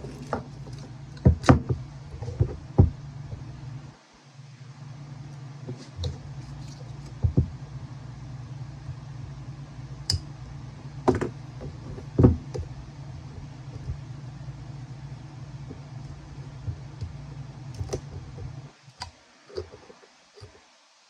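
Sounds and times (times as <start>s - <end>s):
wrapping peeling: 0.0s - 1.2s
low hum: 0.0s - 18.7s.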